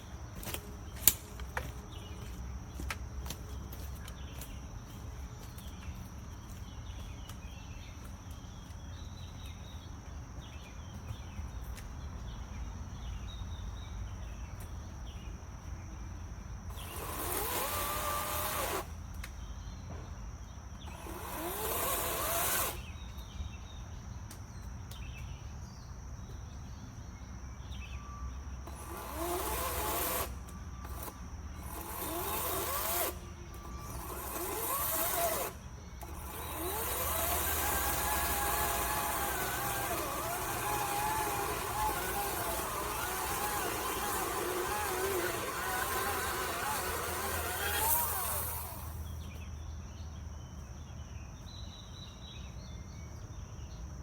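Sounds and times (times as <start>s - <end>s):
outdoor background hum: 0.0s - 54.0s
battery chainsaw revving: 16.7s - 18.9s, 20.9s - 22.9s, 28.7s - 49.1s.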